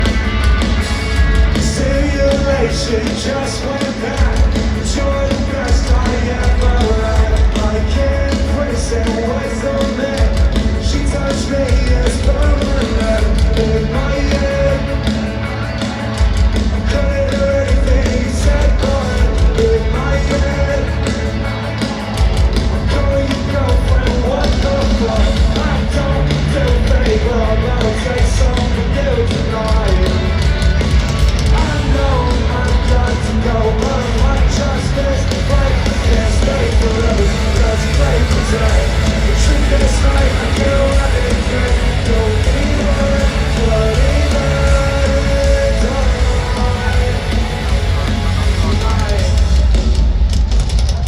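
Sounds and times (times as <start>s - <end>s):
rock band playing: 0.0s - 51.0s
person singing: 31.4s - 49.7s.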